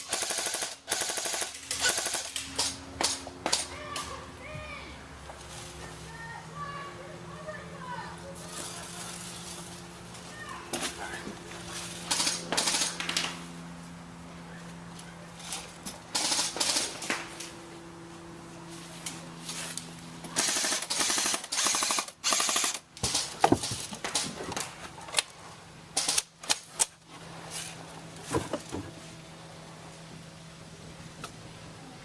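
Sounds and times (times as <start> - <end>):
airsoft guns firing: 0.0 - 4.1, 12.1 - 13.4, 16.1 - 17.5, 20.3 - 23.4.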